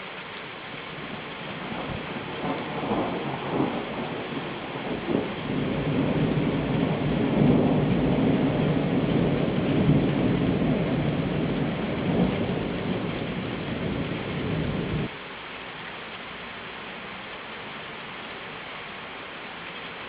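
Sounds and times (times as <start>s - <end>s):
steady rain: 0.0s - 20.0s
rolling thunder: 1.0s - 15.1s.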